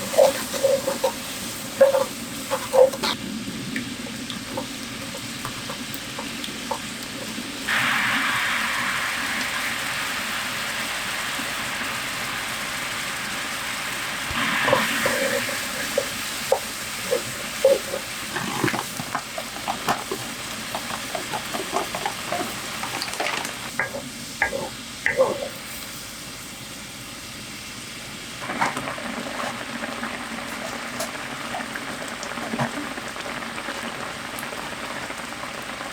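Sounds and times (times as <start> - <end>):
utensil scraping a pan: 0.0 - 3.2, 14.7 - 25.6
food sizzling in a pan: 0.0 - 35.9.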